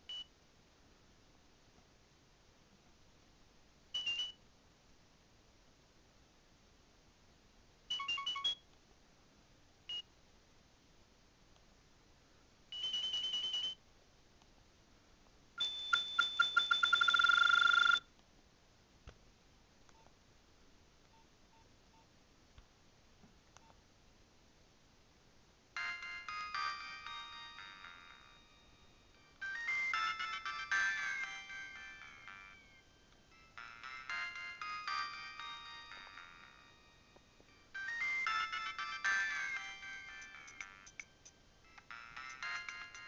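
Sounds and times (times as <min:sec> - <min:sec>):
phone alert beeps: 0:04.0 - 0:04.4, 0:07.9 - 0:08.6, 0:12.8 - 0:13.8, 0:15.6 - 0:18.0
ringtone melody: 0:04.0 - 0:04.4, 0:07.9 - 0:08.6, 0:12.7 - 0:13.8, 0:15.6 - 0:18.0, 0:25.8 - 0:43.0.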